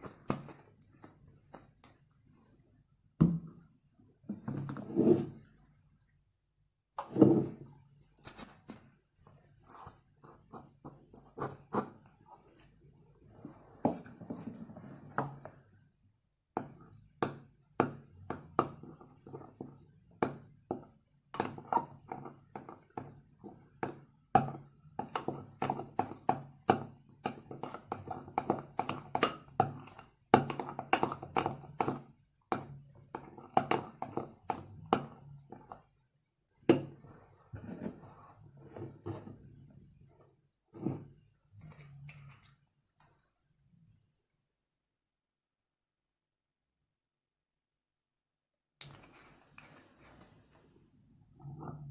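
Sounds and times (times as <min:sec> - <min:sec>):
slime mixed with utensil clicking: 0:16.7 - 0:36.8.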